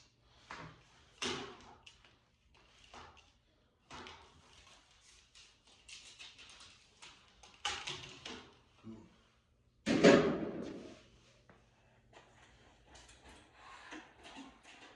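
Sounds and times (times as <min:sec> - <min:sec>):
objects knocking and scraping: 0:09.9 - 0:11.1.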